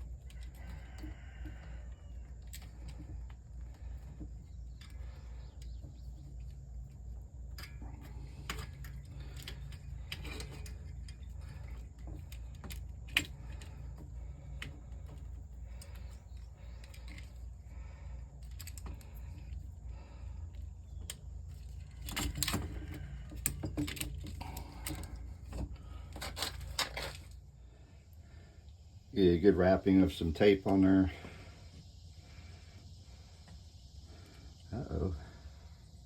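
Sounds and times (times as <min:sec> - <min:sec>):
steady low rumble: 0:00.0 - 0:36.0
hand tools clicking and tapping: 0:02.4 - 0:17.4, 0:21.0 - 0:27.2.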